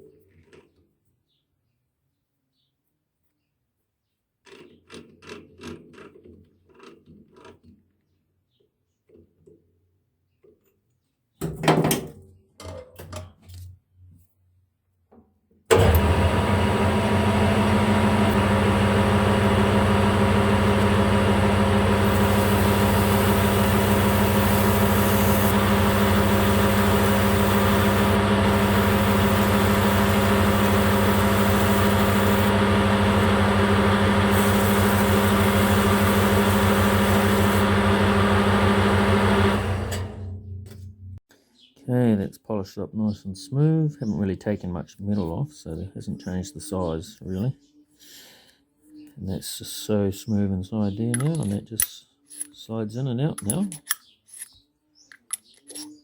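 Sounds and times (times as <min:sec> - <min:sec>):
battery drill running: 0:15.7 - 0:40.4.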